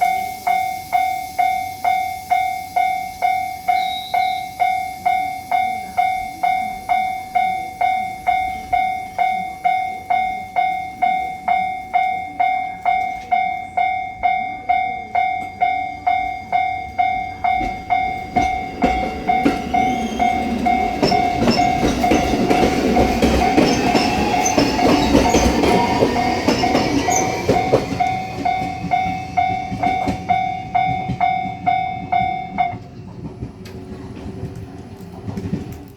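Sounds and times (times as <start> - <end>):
train rumble and wheel clatter: 0.0 - 35.9
level crossing bell dinging: 0.1 - 32.9
train motor whine: 16.5 - 35.9.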